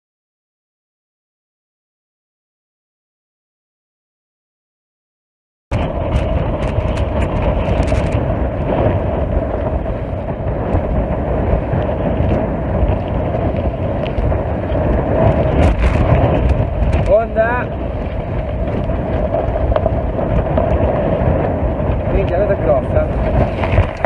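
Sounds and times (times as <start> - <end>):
scattered clicks: 5.7 - 8.2
wind buffeting microphone: 5.7 - 24.0.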